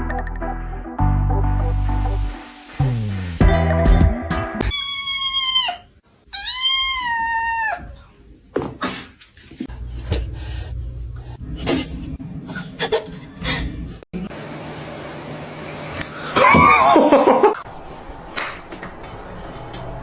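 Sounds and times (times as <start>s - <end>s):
cat meowing: 4.6s - 8.0s.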